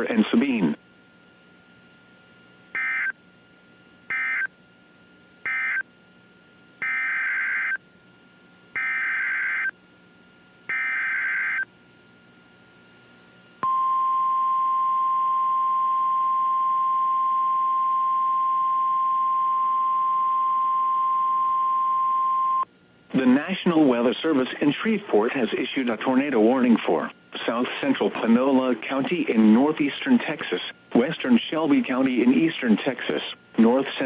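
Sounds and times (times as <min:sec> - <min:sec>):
steady warning alarm tone: 0:02.8 - 0:03.2, 0:04.1 - 0:04.5, 0:05.4 - 0:05.8, 0:06.8 - 0:07.8, 0:08.8 - 0:09.8, 0:10.7 - 0:11.7
buzzy data bursts: 0:06.8 - 0:07.8, 0:08.8 - 0:09.7, 0:10.7 - 0:11.7.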